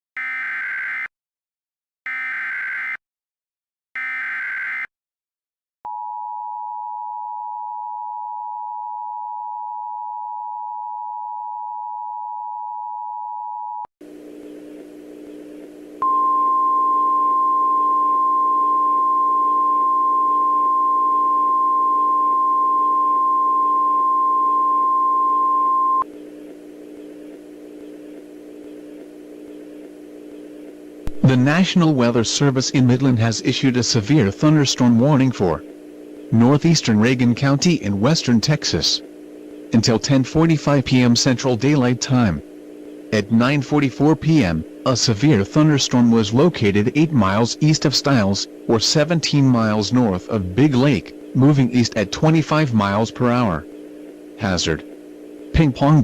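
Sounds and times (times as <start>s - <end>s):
single-pitch alarm tone: 5.9s - 13.9s, 16.0s - 26.1s
steady low hum: 14.0s - 56.0s
two-tone attention signal: 16.0s - 26.0s.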